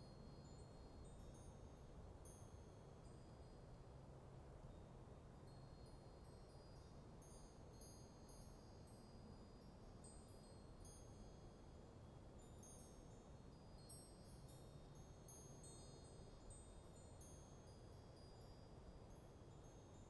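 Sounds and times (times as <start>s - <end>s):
wind chimes tinkling: 12.4s - 20.0s.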